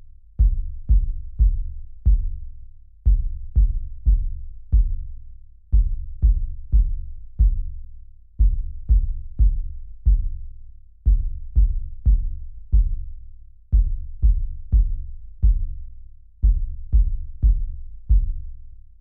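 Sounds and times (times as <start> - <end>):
electronic kick drum hits: 0.4 - 2.4, 3.1 - 5.1, 5.8 - 7.8, 8.4 - 10.4, 11.1 - 13.1, 13.7 - 15.8, 16.4 - 18.4.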